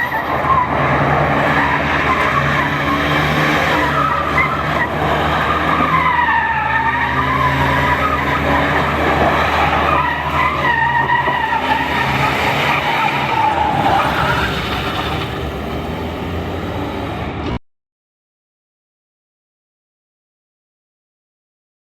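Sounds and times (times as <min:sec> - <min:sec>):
tyres squealing: 0:00.0 - 0:16.8
car engine under power: 0:00.4 - 0:17.6.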